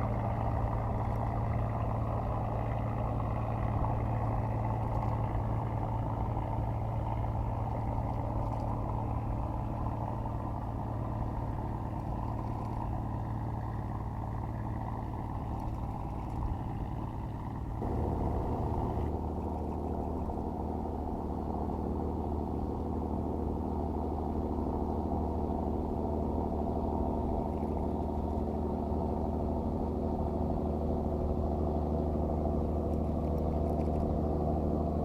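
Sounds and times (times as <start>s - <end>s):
engine humming: 0.0s - 20.6s.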